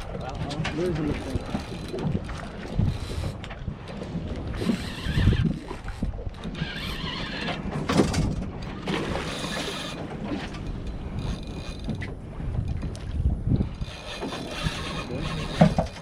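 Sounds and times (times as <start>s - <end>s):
gear clattering on deck: 0.0s - 3.0s, 6.5s - 13.0s, 13.8s - 16.0s
water noise: 0.0s - 16.0s
wind: 0.0s - 16.0s.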